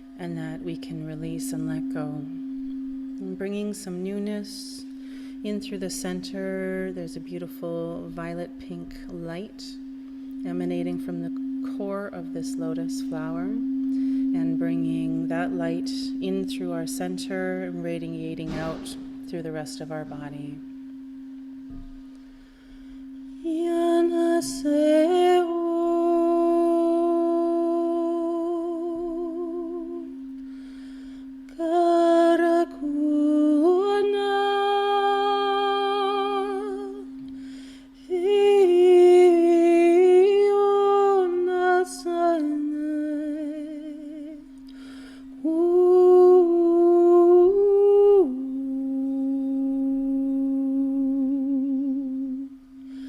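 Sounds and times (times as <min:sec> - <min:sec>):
woman singing wordless tones: 0:00.0 - 0:52.8
steady drone: 0:00.0 - 0:53.0.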